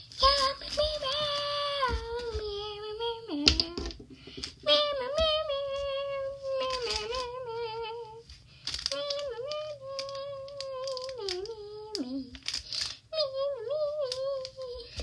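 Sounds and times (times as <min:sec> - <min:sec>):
high voice humming: 0:00.0 - 0:08.3, 0:08.9 - 0:12.4.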